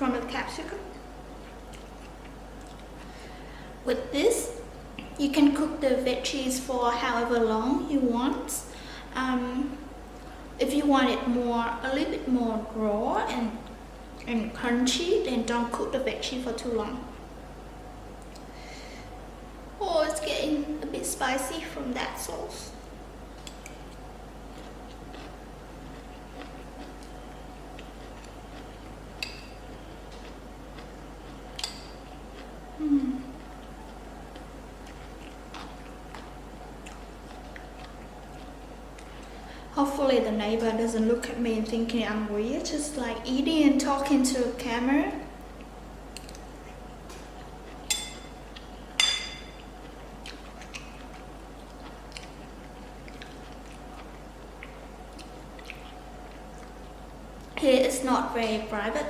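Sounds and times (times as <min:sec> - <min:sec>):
soft chewing: 0:00.8 - 0:03.4, 0:18.2 - 0:18.6, 0:22.7 - 0:39.7, 0:45.4 - 0:59.0
soft ticks of eating: 0:00.9 - 0:03.2, 0:18.2 - 0:18.5, 0:22.7 - 0:39.5, 0:45.4 - 0:57.7.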